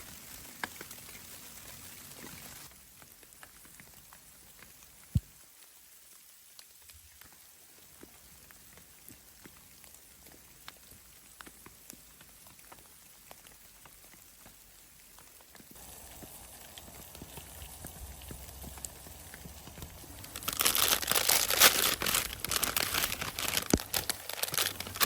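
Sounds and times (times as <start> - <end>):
faint hiss: 0.0 - 25.0
drops ticking on a surface: 7.1 - 25.0.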